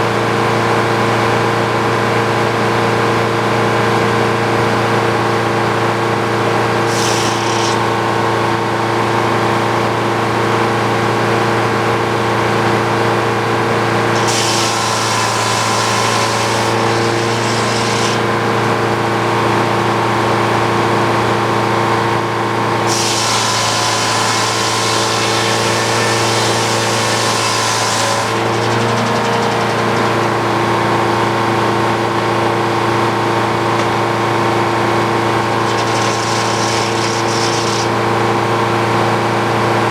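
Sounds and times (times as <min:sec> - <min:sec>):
sawmill engine droning: 0:00.0 - 0:39.9
saw blade cutting log: 0:06.6 - 0:08.1, 0:13.8 - 0:19.1, 0:22.7 - 0:32.5, 0:35.0 - 0:38.8.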